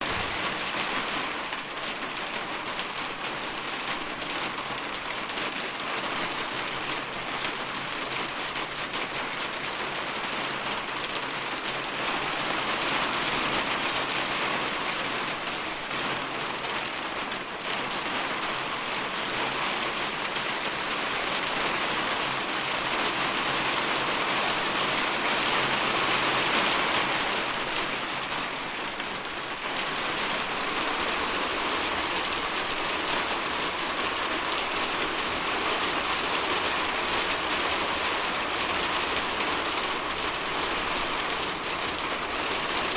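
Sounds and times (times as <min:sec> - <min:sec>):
rain pattering on a surface: 0:00.0 - 0:42.9.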